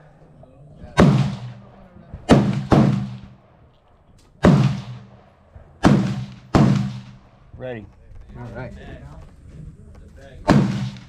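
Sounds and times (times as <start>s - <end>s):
gunshots with ringing tail: 0.9s - 3.6s, 4.4s - 7.5s, 10.5s - 11.0s.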